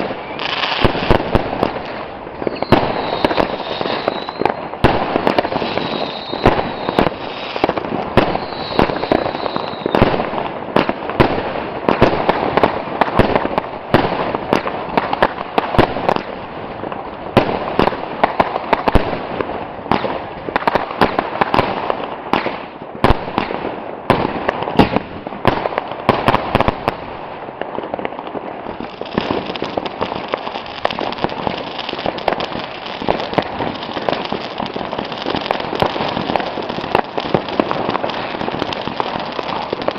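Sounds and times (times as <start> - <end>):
firework bangs: 0.0 - 39.9
firework crackle: 0.0 - 39.9
thin high whistle: 2.4 - 4.6, 5.8 - 7.0, 8.4 - 10.0.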